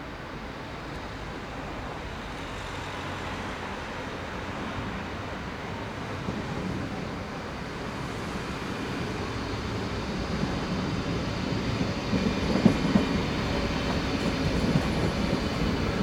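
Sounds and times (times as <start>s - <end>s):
electric train moving: 7.1s - 16.0s.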